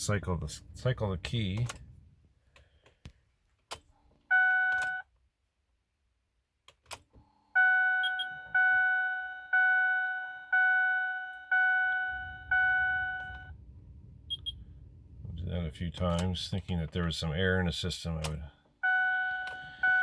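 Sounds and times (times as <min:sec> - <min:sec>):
dashboard warning chime dings: 0:04.3 - 0:05.1, 0:07.6 - 0:13.6, 0:18.2 - 0:20.0
low rumble: 0:12.1 - 0:15.5.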